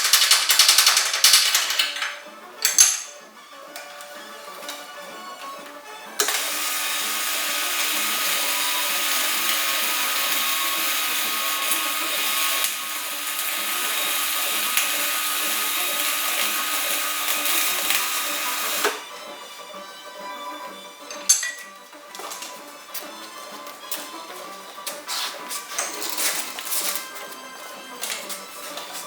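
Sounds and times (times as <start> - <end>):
welding arc crackling hiss: 6.2 - 19.0.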